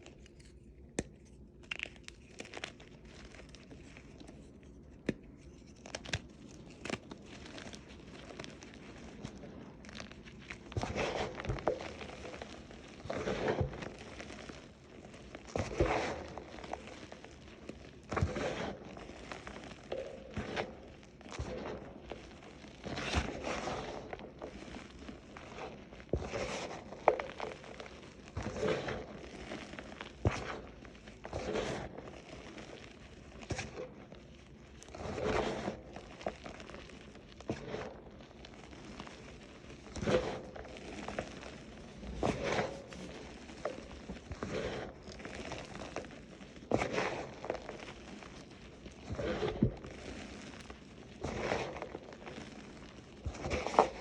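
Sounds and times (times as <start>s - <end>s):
chalk crunching: 0.0s - 54.0s.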